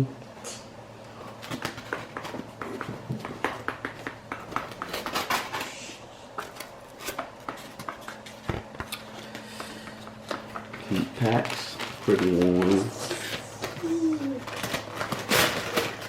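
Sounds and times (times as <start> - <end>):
packing materials crinkling and rustling: 10.2 - 16.0.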